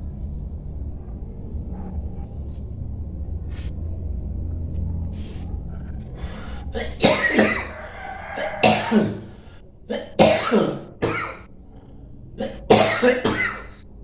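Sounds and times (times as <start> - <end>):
low rumbling noise: 0.0 - 14.0.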